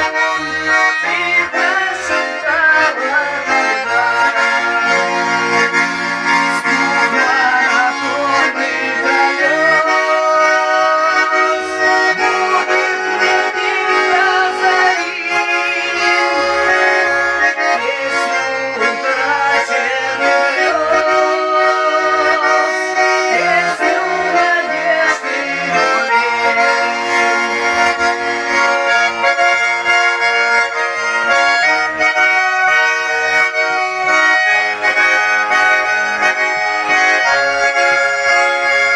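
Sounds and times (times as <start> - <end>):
bass and chord accompaniment: 0.0 - 38.9
button accordion melody: 0.0 - 38.9.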